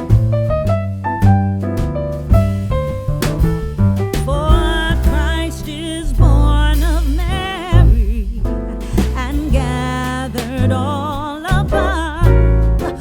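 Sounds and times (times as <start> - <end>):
bass and instrumental accompaniment: 0.0 - 13.0
person singing with vibrato: 9.2 - 13.0.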